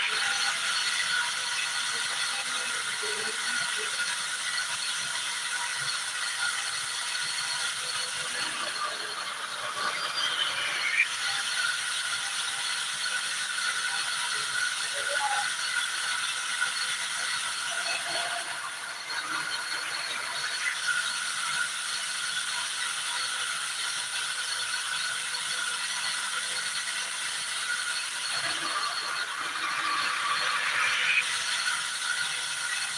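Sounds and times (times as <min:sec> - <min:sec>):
saw machine whining: 0:27.8 - 0:32.9.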